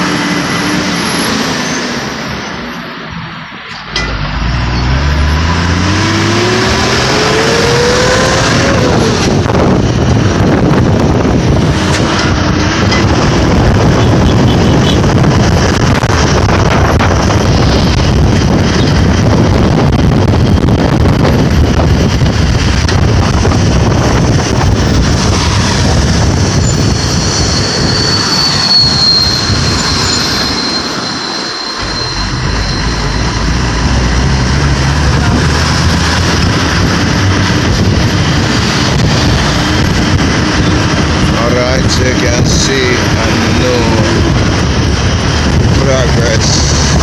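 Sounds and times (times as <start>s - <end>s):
road and wind noise: 0.0s - 47.0s
high squeal: 1.0s - 2.6s, 25.0s - 33.8s.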